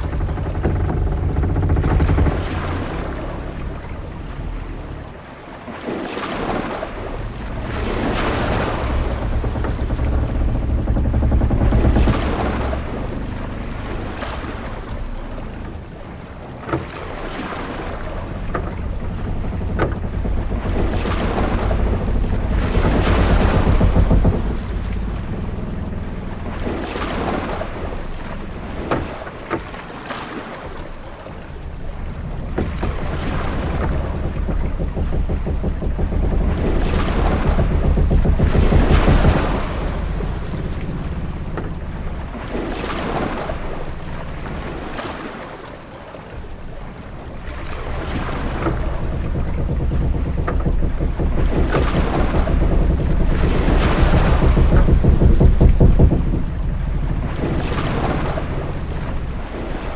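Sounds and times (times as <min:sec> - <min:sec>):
short sharp knocks: 0:00.0 - 0:05.2, 0:17.8 - 0:29.7, 0:30.7 - 0:45.0, 0:47.3 - 0:59.9
low rumble of wind and water: 0:00.0 - 0:59.9
waves washing and surging: 0:25.1 - 0:59.9.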